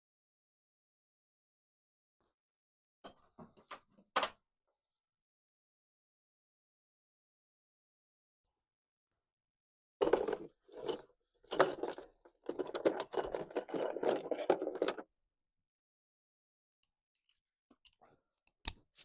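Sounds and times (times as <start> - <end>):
metal tools clattering and scraping: 10.0 - 15.0.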